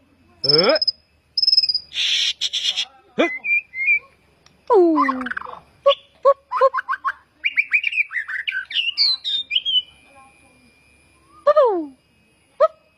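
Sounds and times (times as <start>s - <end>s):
bird calling: 0.4s - 4.1s, 4.8s - 10.0s.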